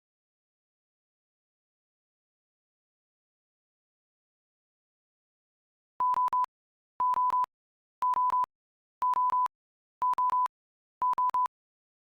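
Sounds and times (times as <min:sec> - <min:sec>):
timer alarm beeping: 0:06.0 - 0:11.5.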